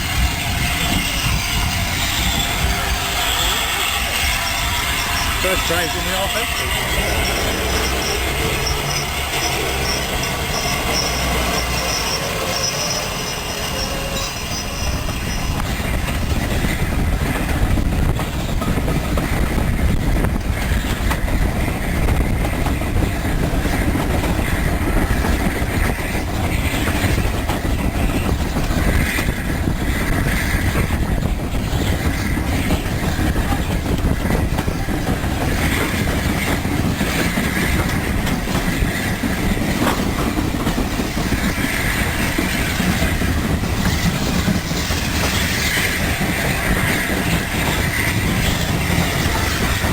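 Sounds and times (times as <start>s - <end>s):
high wheel squeal: 0.0s - 17.0s
train rumbling on rails: 0.0s - 49.9s.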